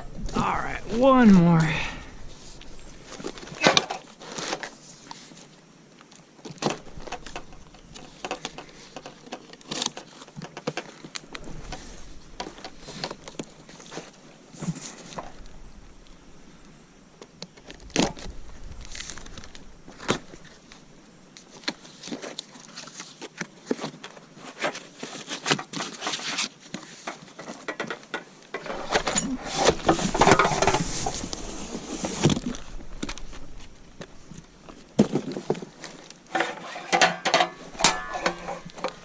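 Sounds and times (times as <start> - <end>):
rustling and clattering: 2.1 - 5.5, 6.4 - 15.7, 17.5 - 39.0.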